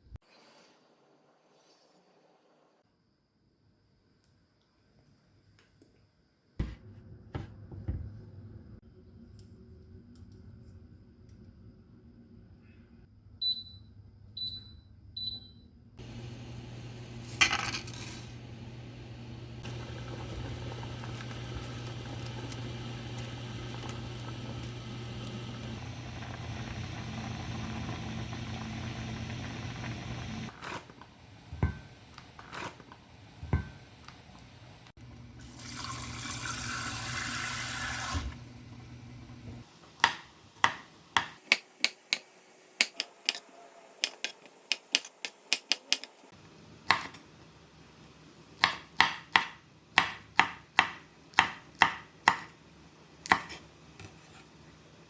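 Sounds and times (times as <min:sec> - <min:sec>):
low hum with hiss: 0:06.3 - 0:39.7
tap running: 0:19.6 - 0:30.6
knife chopping on cutting board: 0:40.0 - 0:42.2, 0:48.6 - 0:52.5, 0:53.2 - 0:53.6.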